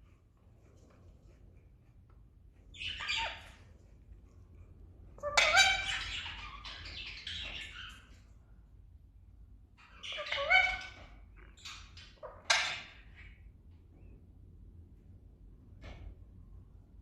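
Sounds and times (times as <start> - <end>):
parrot squawking: 2.7 - 3.6, 5.2 - 8.1, 9.8 - 13.0.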